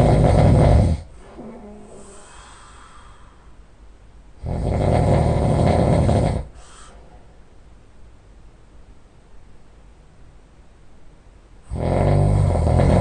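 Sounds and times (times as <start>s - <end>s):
person snoring: 0.0s - 3.5s, 4.4s - 7.0s, 11.7s - 13.0s
quiet breathing: 0.0s - 4.0s, 5.1s - 7.5s.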